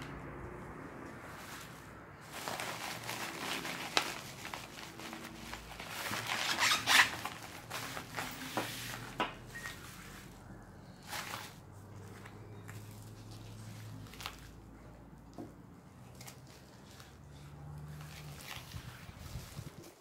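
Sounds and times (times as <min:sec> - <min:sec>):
packaging rustling and crinkling: 0:01.3 - 0:10.4, 0:11.0 - 0:14.6, 0:17.8 - 0:20.0.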